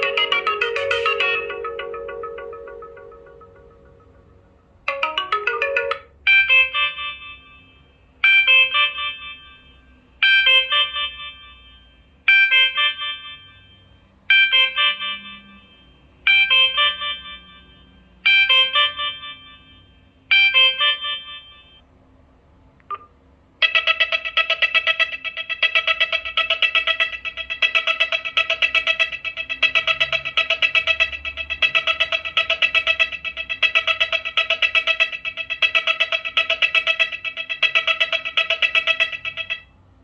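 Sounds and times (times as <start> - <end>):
phone ringtone short phrase: 0.0 - 3.5
ringtone with fast notes: 0.0 - 21.8, 22.9 - 39.8.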